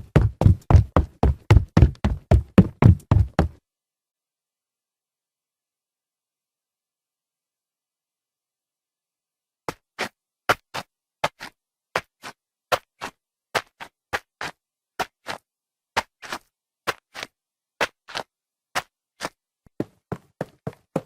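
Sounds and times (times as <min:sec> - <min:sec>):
footsteps on a hard floor: 0:00.0 - 0:03.6.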